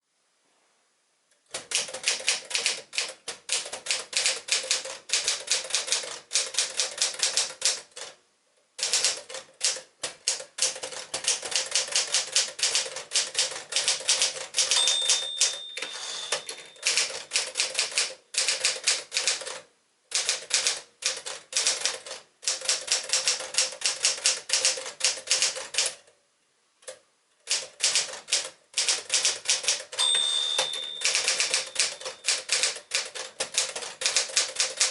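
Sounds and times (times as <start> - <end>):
typewriter keystroke clacks: 1.5 - 8.2, 8.8 - 26.0, 26.8 - 34.9
typewriter margin bell: 14.6 - 17.9, 30.0 - 33.2.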